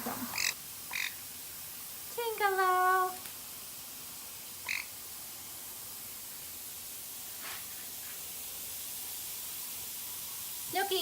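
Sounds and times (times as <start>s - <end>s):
water mister hissing: 0.0s - 11.0s
parrot chirping: 0.3s - 1.2s, 4.6s - 5.0s.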